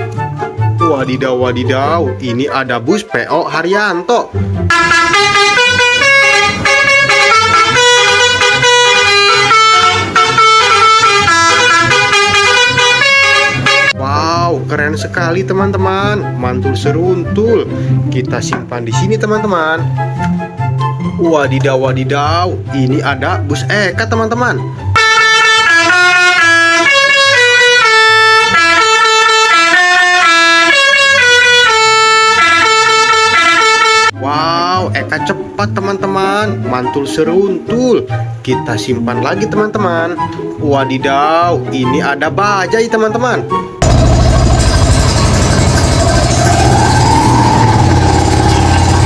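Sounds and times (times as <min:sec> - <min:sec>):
multi-tone bus horn melody: 0:04.7 - 0:14.0, 0:24.9 - 0:34.2.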